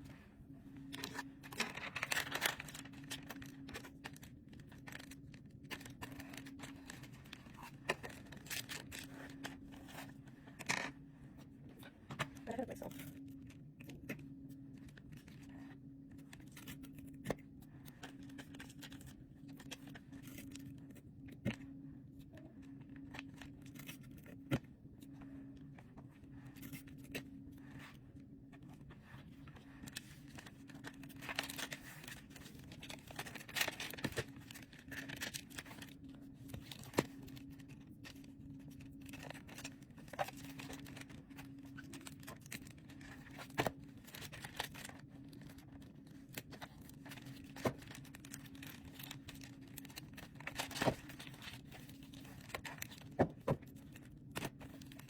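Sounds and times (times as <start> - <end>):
plastic cover crinkling: 1.0 - 9.6, 29.8 - 55.0.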